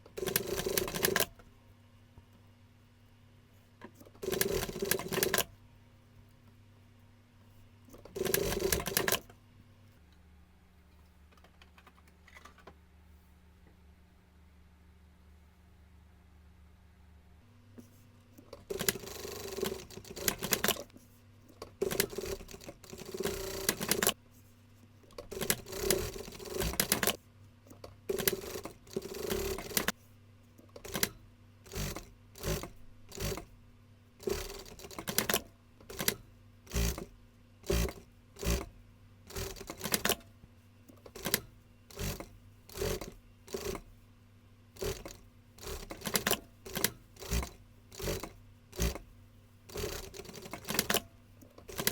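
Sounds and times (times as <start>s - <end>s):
sewing machine stitching: 0.1s - 1.3s, 4.0s - 5.5s, 8.0s - 9.3s, 18.4s - 20.9s, 21.6s - 24.2s, 25.1s - 29.9s, 30.7s - 33.5s, 34.2s - 38.7s, 39.3s - 40.3s, 41.0s - 43.9s, 44.8s - 49.1s, 49.7s - 51.9s.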